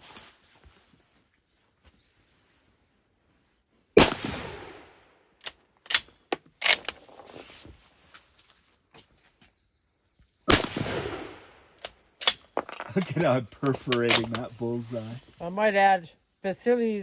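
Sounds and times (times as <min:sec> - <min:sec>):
rifle shot echoing: 0:04.0 - 0:05.0, 0:10.5 - 0:11.6
sharp rifle clicks: 0:05.4 - 0:07.0.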